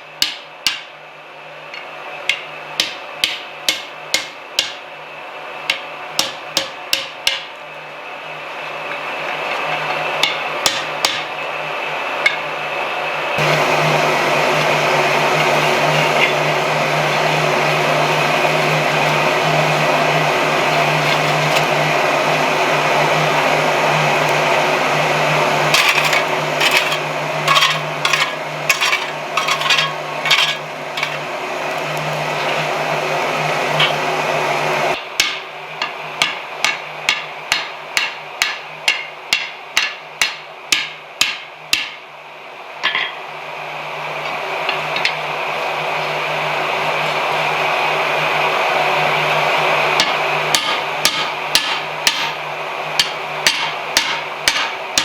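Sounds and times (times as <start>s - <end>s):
forge blower humming: 0.0s - 55.0s
hammer striking anvil: 0.2s - 0.9s, 2.3s - 4.8s, 5.7s - 7.5s, 10.2s - 11.3s, 25.7s - 31.2s, 35.2s - 42.0s, 42.8s - 43.2s, 50.0s - 52.4s, 53.0s - 55.0s.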